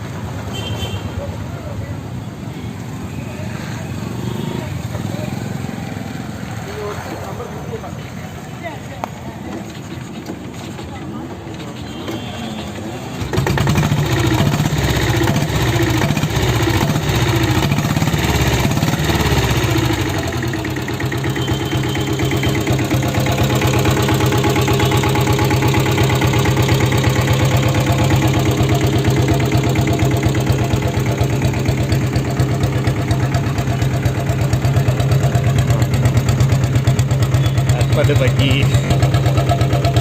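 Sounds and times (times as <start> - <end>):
single-cylinder engine idling: 13.1 - 40.0.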